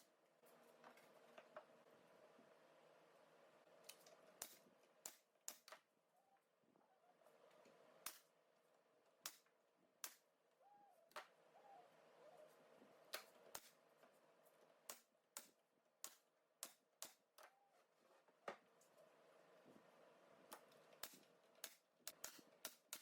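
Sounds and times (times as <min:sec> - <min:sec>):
low steady hum: 0:00.0 - 0:16.5.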